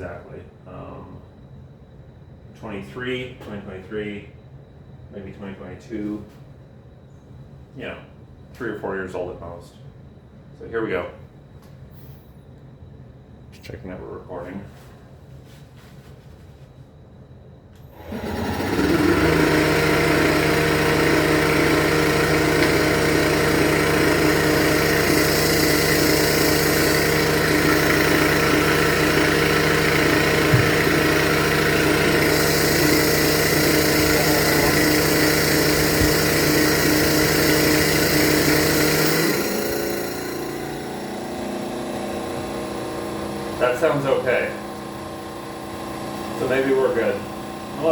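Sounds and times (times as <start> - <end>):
vacuum pump humming: 17.8 - 47.9.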